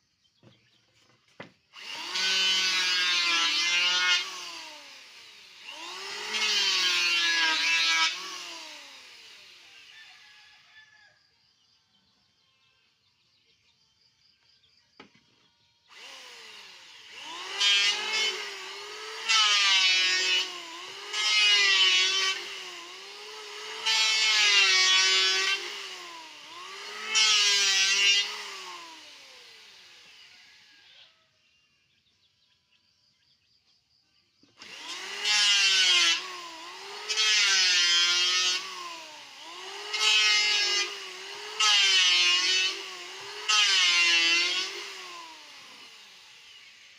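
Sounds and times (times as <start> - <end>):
electric wood planer shaving wood: 1.3 - 10.4, 15.9 - 31.1, 34.5 - 46.9.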